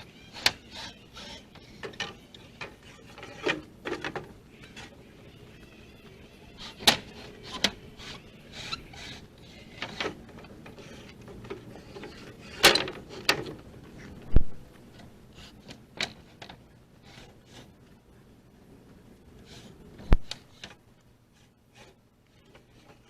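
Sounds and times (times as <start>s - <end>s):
boards scraping: 0.0s - 14.2s.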